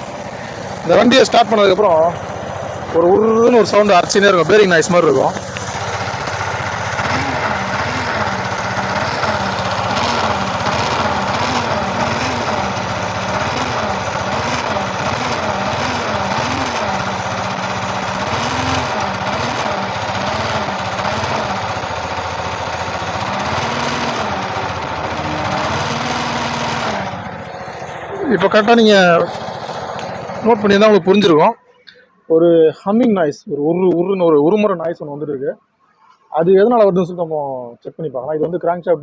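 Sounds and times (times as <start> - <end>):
motorcycle engine idling: 0.0 - 31.5.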